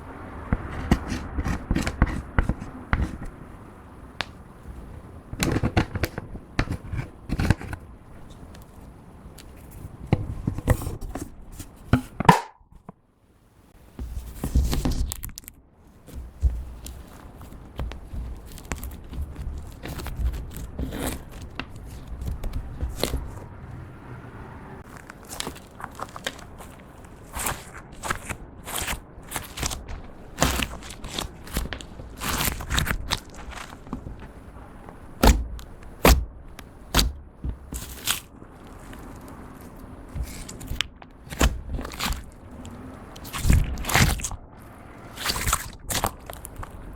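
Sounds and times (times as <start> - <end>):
sticky crackles and air pops: 14.3 - 23.4, 24.8 - 46.9
slime squished by hand: 43.2 - 44.4, 45.1 - 46.8.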